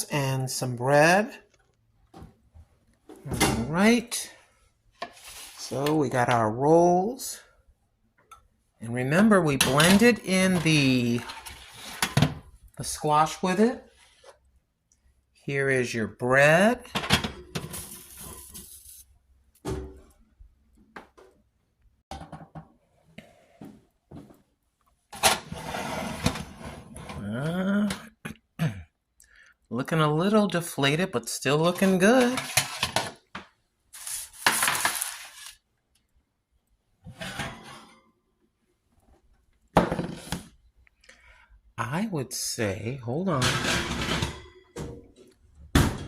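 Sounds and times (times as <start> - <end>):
kitchenware scraping and clattering: 9.3 - 12.5, 16.8 - 18.8, 25.2 - 27.3, 32.0 - 33.4, 37.0 - 38.1, 39.8 - 40.5, 43.3 - 45.2.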